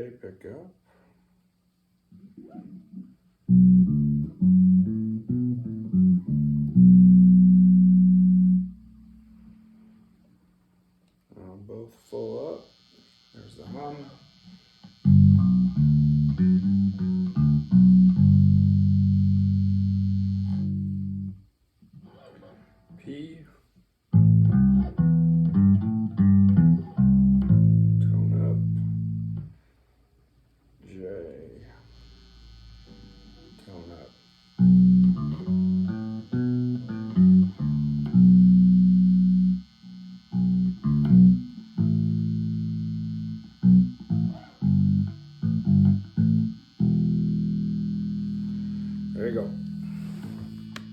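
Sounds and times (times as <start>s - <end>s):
faint pickup hum: 0.0s - 50.9s
electric bass plucked notes: 3.4s - 9.5s, 12.7s - 21.5s, 24.1s - 29.6s, 31.8s - 50.9s.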